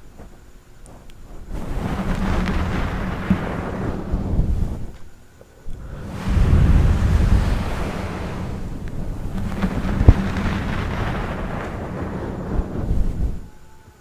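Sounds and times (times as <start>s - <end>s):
thunder rumbling: 1.2s - 14.0s
sharp thunder crack: 1.3s - 13.5s.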